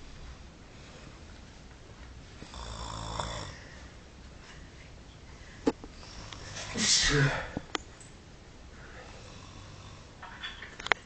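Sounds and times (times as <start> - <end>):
faint low hum: 0.0 - 11.0
person snoring: 2.4 - 3.7, 9.0 - 10.2.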